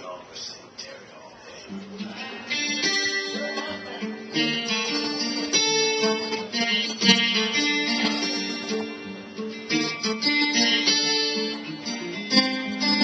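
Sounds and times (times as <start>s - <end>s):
blues guitar picking: 1.7s - 13.0s.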